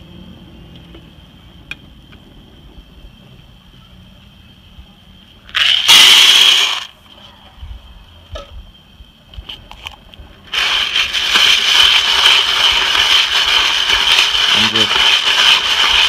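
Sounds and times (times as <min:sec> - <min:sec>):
stirrer churning beans in pan: 0:05.5 - 0:06.8, 0:10.5 - 0:16.0
coffee beans poured rattling rush: 0:05.5 - 0:06.9, 0:10.5 - 0:16.0.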